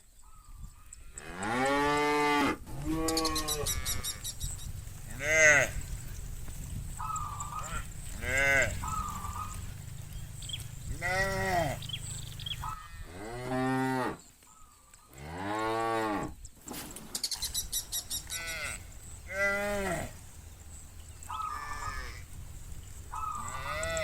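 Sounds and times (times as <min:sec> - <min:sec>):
rapid ticking rattle: 0:04.5 - 0:12.6
cattle mooing: 0:05.0 - 0:06.2, 0:07.0 - 0:14.2, 0:17.8 - 0:24.0.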